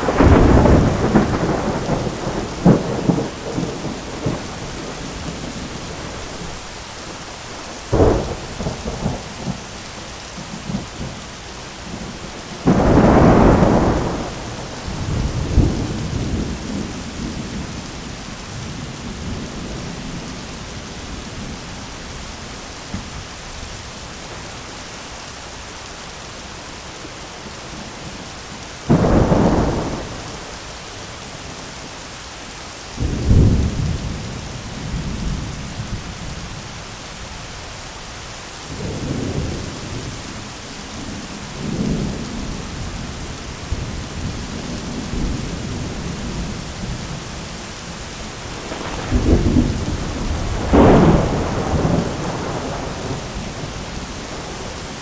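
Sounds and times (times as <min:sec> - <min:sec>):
sharp thunder crack: 0:00.0 - 0:06.5, 0:12.6 - 0:17.7, 0:48.5 - 0:54.7
thunder rumbling: 0:00.0 - 0:09.8, 0:11.8 - 0:21.8, 0:28.8 - 0:30.7, 0:33.0 - 0:36.8, 0:38.7 - 0:55.0
heavy rain: 0:00.0 - 0:55.0.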